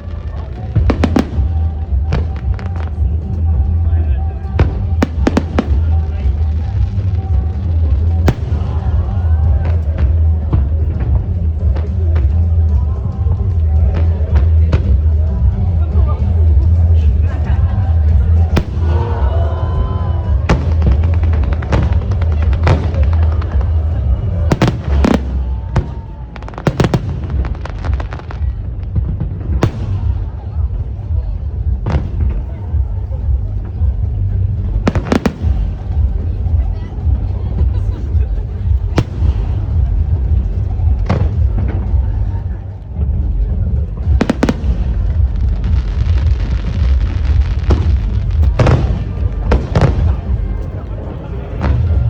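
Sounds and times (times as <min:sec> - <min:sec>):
fireworks bangs: 0:00.0 - 0:52.0
fireworks crackling: 0:00.0 - 0:52.0
low rumble: 0:00.0 - 0:52.0
sharp firework bangs: 0:44.2 - 0:50.5.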